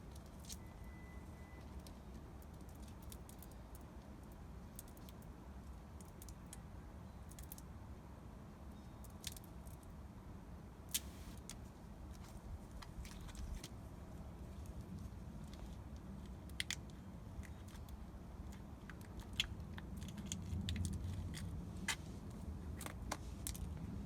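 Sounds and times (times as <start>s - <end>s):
low steady hum: 9.9s - 24.0s.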